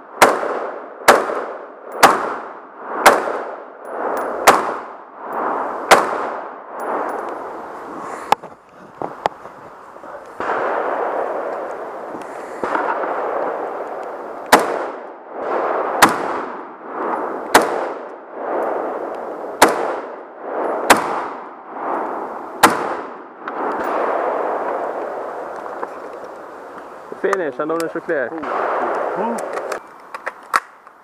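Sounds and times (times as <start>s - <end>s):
rifle shots: 0.1s - 7.2s, 10.4s - 12.0s, 12.6s - 22.0s, 22.6s - 25.2s, 28.4s - 29.8s
steady rushing noise: 1.6s - 29.8s.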